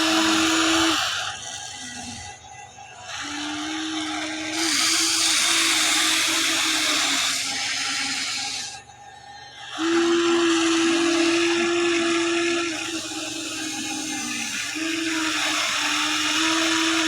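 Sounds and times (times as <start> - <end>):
high grinding: 0.0 - 2.4, 3.0 - 8.8
electric gear motors whining: 0.0 - 17.0.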